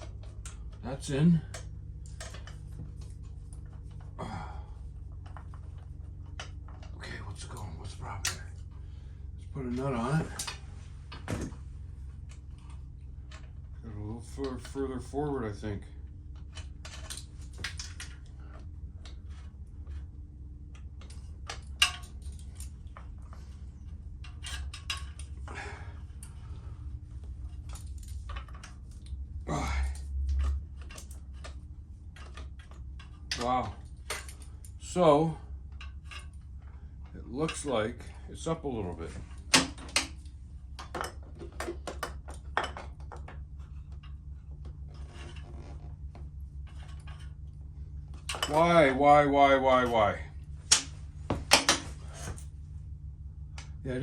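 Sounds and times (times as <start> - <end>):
metal tools clinking: 0.0 - 4.6, 16.4 - 20.0, 20.8 - 26.7, 27.3 - 31.6, 32.2 - 35.0, 35.6 - 38.2, 39.1 - 49.0
steady low hum: 0.0 - 54.0.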